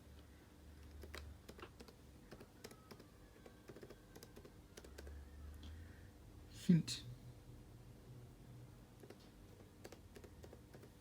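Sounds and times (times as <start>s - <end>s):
faint keyboard typing: 0.2s - 5.8s, 9.0s - 11.0s.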